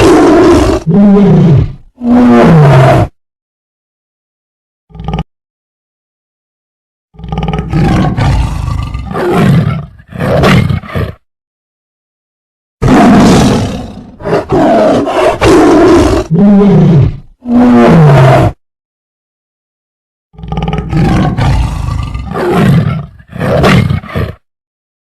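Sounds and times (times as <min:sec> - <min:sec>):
large animal roaring: 0:00.0 - 0:03.2, 0:04.9 - 0:05.3, 0:07.1 - 0:11.2, 0:12.8 - 0:18.6, 0:20.4 - 0:24.5.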